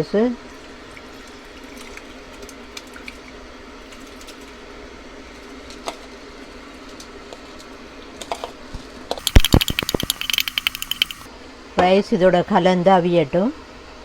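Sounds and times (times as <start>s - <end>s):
broth simmering in a pot: 9.2s - 11.3s
spoon stirring in a pot: 9.2s - 11.3s.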